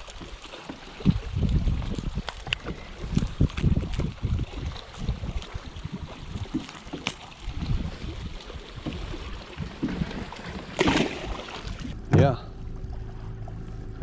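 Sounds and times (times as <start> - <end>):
wind buffeting microphone: 0.0 - 10.6.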